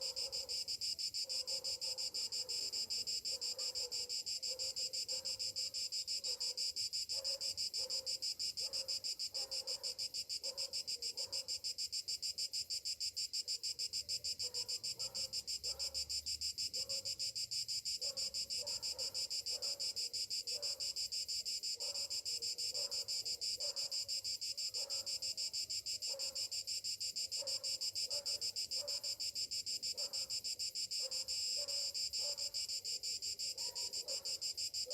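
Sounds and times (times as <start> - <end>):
cicadas chorus: 0.0 - 34.9.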